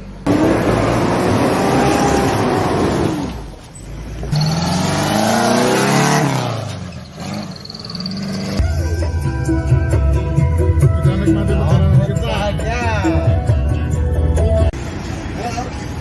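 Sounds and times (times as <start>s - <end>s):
engine revving: 0.2s - 3.6s, 4.2s - 8.7s.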